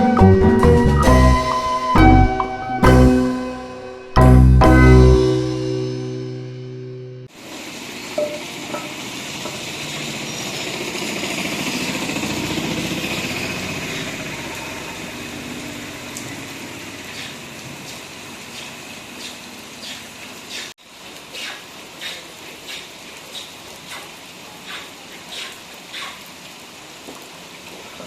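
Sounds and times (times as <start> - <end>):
vehicle passing on wet street: 7.2 - 21.3.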